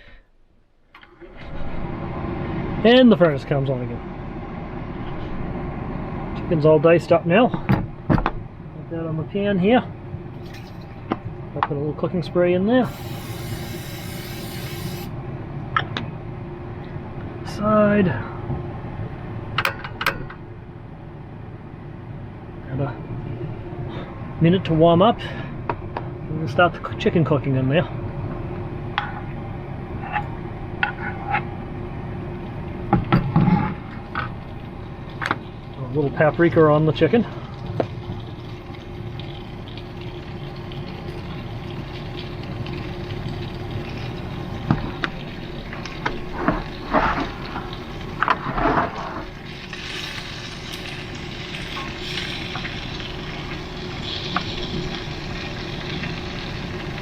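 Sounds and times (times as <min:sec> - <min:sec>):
heater furnace humming: 0:00.0 - 0:57.0
chicken sizzling in a skillet: 0:12.8 - 0:15.1, 0:37.4 - 0:57.0.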